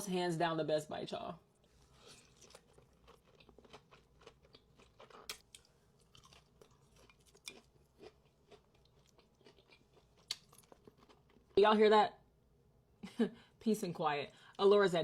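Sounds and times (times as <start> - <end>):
person chewing food: 1.6 - 11.6.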